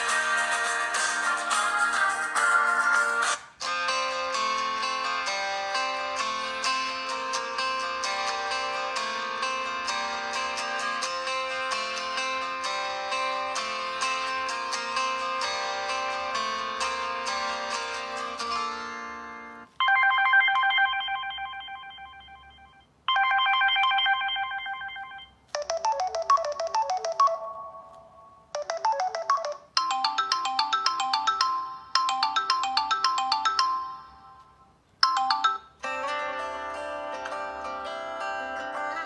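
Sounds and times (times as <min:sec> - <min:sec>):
electronic ringtone melodies: 0:19.8 - 0:36.1.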